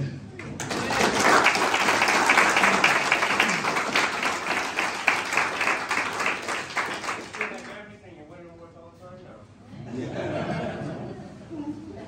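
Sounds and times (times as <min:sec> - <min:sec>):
audience applauding: 0:00.4 - 0:07.8.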